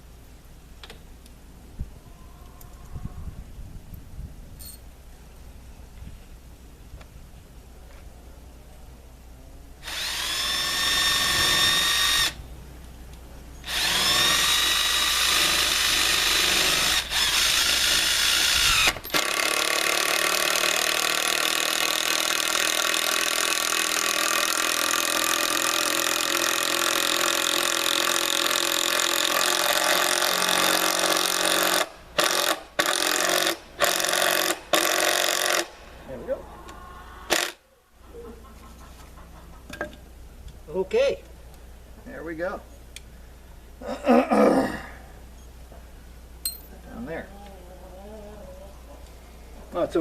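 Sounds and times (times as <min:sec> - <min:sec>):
electric power drill running: 0:09.8 - 0:12.4, 0:13.6 - 0:35.7.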